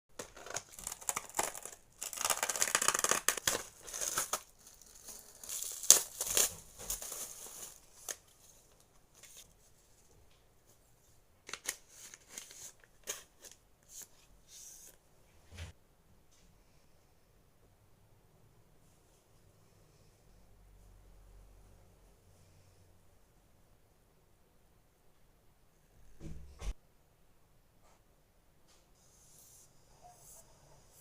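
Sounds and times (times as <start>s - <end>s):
packaging tearing and crinkling: 0.2s - 8.4s.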